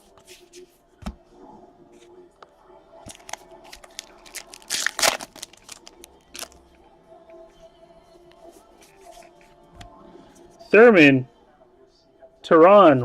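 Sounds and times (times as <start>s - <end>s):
foil wrapper crinkling and tearing: 3.1s - 6.6s.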